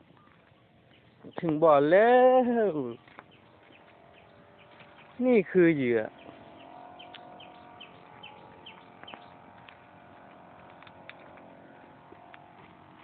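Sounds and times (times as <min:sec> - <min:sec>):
faint bird chirping: 0:02.9 - 0:09.5
scattered clicks: 0:07.0 - 0:11.6.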